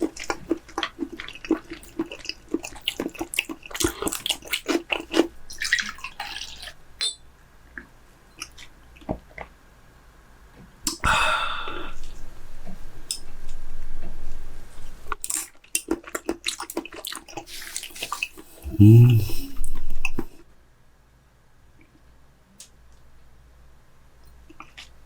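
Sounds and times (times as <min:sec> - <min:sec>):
wet chewing sounds: 0:00.0 - 0:06.8, 0:15.2 - 0:20.3.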